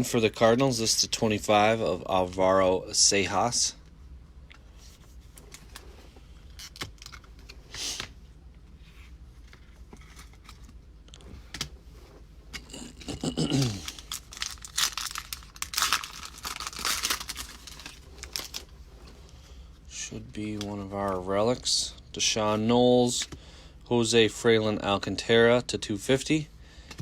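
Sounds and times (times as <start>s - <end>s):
foil wrapper tearing and crinkling: 13.6s - 18.7s.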